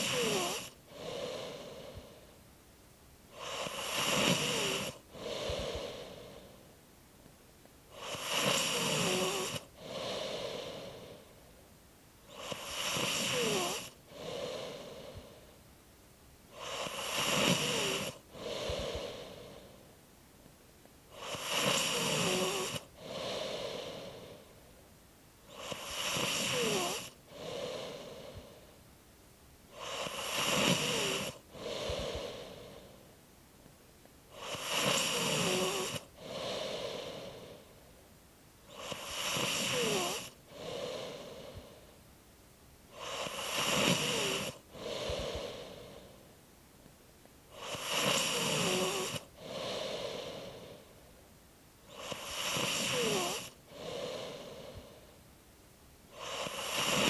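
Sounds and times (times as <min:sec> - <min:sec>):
squeak in snore: 0:00.0 - 0:00.7, 0:03.4 - 0:05.0, 0:08.0 - 0:09.6, 0:12.3 - 0:13.9, 0:16.6 - 0:18.2, 0:21.2 - 0:22.8, 0:25.5 - 0:27.1, 0:29.8 - 0:31.4, 0:34.4 - 0:36.0, 0:38.7 - 0:40.3, 0:43.0 - 0:44.6, 0:47.6 - 0:49.2, 0:51.9 - 0:53.5, 0:56.2 - 0:57.0
person snoring: 0:00.0 - 0:02.3, 0:03.3 - 0:06.7, 0:07.9 - 0:11.4, 0:12.2 - 0:15.6, 0:16.5 - 0:19.8, 0:21.1 - 0:24.6, 0:25.5 - 0:28.7, 0:29.7 - 0:33.1, 0:34.3 - 0:37.8, 0:38.7 - 0:42.0, 0:42.9 - 0:46.3, 0:47.5 - 0:51.0, 0:51.8 - 0:55.2, 0:56.1 - 0:57.0
soft breath: 0:00.0 - 0:02.6, 0:03.3 - 0:15.8, 0:16.4 - 0:29.0, 0:29.6 - 0:42.2, 0:42.8 - 0:55.4, 0:56.1 - 0:57.0.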